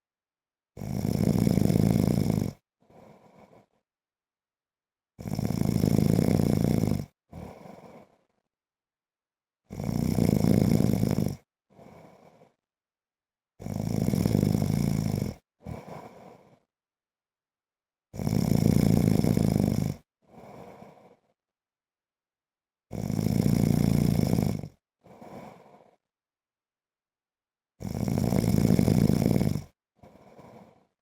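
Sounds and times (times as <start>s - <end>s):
man snoring: 0.8s - 3.8s, 5.2s - 8.3s, 9.7s - 12.6s, 13.6s - 16.7s, 18.2s - 21.3s, 22.9s - 26.0s, 27.8s - 31.0s
soft short breath: 7.4s - 8.5s, 25.1s - 26.1s.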